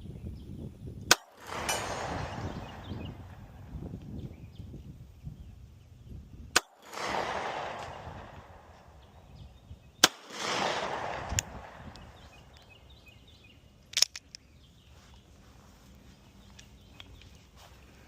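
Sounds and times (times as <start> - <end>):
pistol shots: 1.1 - 3.7, 6.5 - 13.1
fainter sharp crack: 6.6 - 9.2, 10.0 - 12.8.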